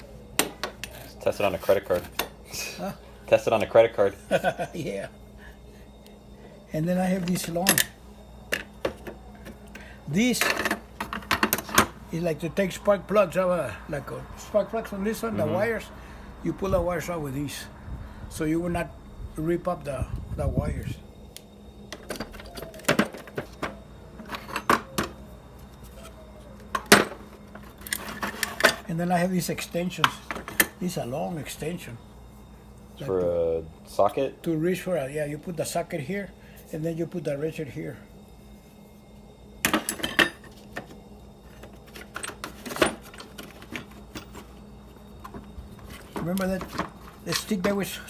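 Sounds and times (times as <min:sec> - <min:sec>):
metal tools clinking: 0:39.7 - 0:40.6, 0:45.2 - 0:47.9.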